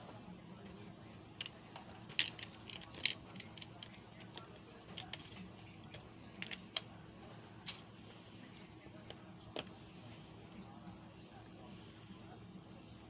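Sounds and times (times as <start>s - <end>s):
faint steady hum: 0.0s - 13.0s
tools and parts clicking: 1.4s - 4.0s.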